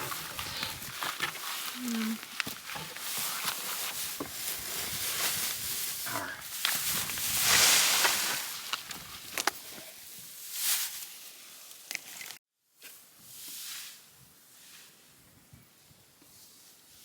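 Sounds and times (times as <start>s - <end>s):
dry hay rustling and crackling: 0.0s - 12.4s.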